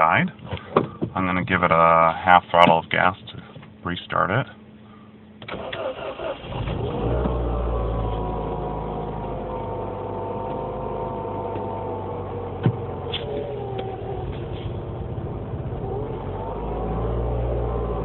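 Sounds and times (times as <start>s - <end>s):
car engine cranking and idling: 4.6s - 18.0s.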